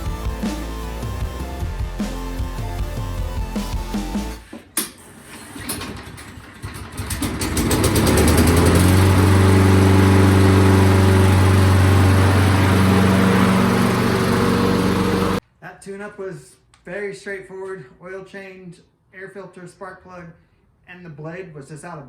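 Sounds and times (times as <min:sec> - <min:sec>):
lawn mower engine running: 0:05.0 - 0:15.4.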